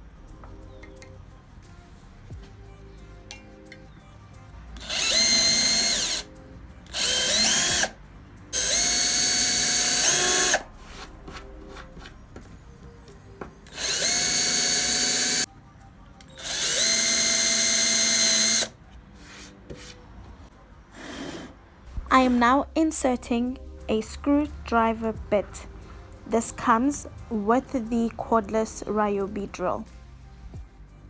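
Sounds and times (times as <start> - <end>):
cordless drill drilling into wood: 4.8 - 6.3, 6.9 - 8.0, 8.6 - 10.6, 13.7 - 15.5, 16.4 - 18.7.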